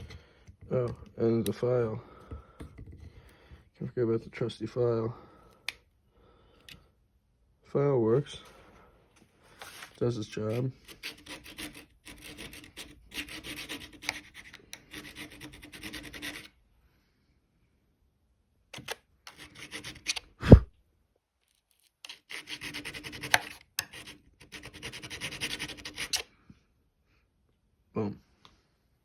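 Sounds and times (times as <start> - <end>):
metal file rasping: 9.8 - 16.5, 18.8 - 20.2, 22.1 - 26.2.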